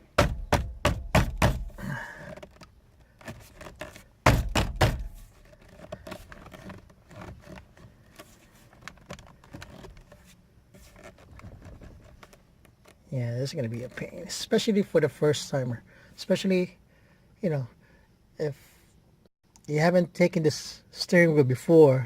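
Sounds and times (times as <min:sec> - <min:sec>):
hand thumping steering wheel: 0:00.0 - 0:02.6, 0:03.2 - 0:07.7.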